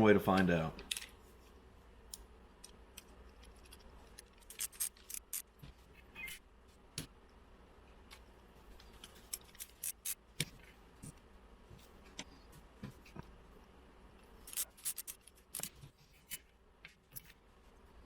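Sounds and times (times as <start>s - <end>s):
plastic parts clicking: 0.4s - 1.2s, 2.1s - 5.5s.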